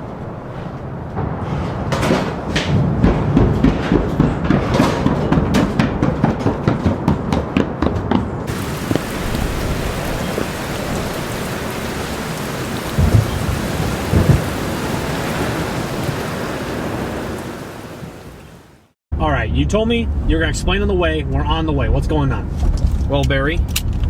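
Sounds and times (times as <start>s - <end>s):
thunder rumbling: 8.5s - 18.9s
heavy rain: 8.5s - 19.0s.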